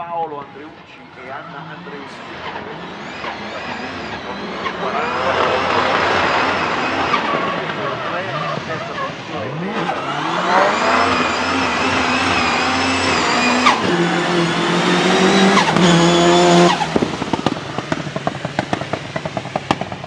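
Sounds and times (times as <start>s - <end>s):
turbo flutter chatter: 0.0s - 10.8s
car engine at high revs: 0.0s - 20.0s.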